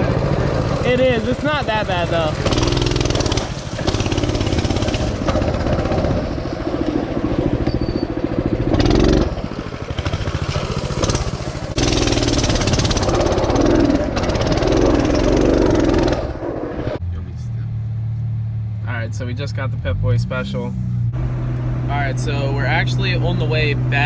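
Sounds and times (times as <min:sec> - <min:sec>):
small bike engine revving: 0:00.0 - 0:24.0.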